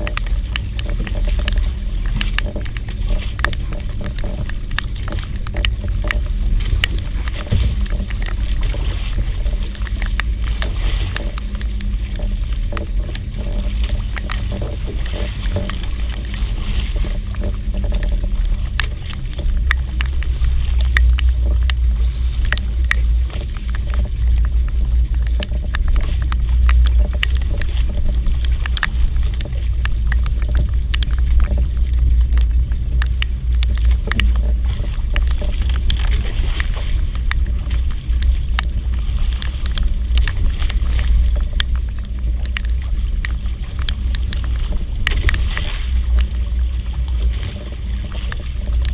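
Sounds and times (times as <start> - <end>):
boat engine low rumble: 0.0 - 48.9
small sharp ticks: 0.0 - 48.9.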